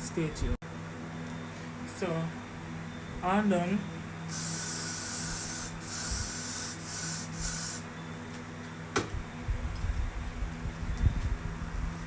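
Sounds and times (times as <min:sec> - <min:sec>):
spray hissing: 0:04.3 - 0:07.8.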